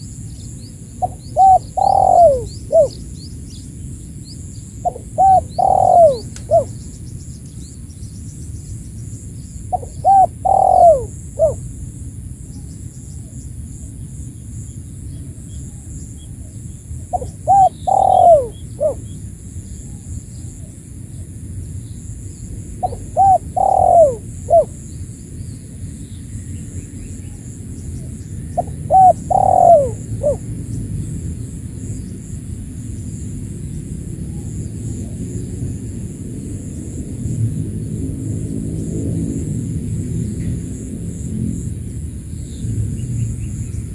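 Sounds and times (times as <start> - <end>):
dove cooing: 1.0 - 3.0, 4.8 - 6.8, 9.7 - 11.7, 16.4 - 19.2, 22.7 - 24.8, 28.6 - 30.5.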